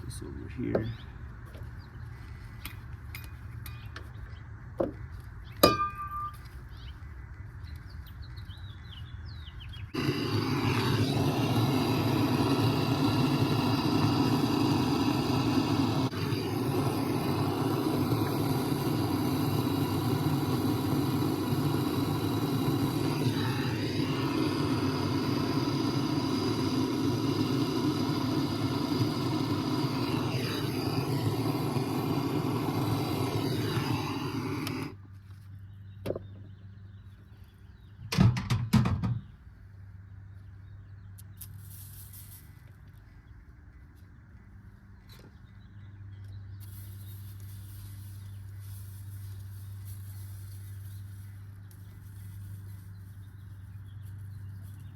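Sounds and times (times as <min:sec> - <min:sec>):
machine running: 0:10.0 - 0:35.0.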